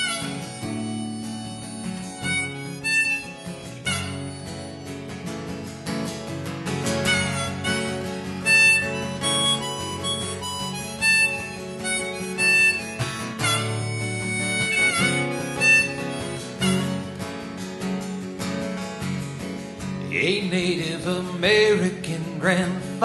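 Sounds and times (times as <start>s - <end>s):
harmonica melody: 0.0s - 18.2s
strummed acoustic guitar: 0.0s - 23.0s.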